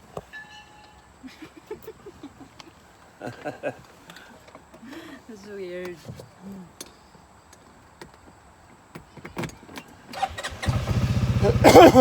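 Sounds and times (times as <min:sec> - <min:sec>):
quad bike engine running: 0:10.2 - 0:12.0.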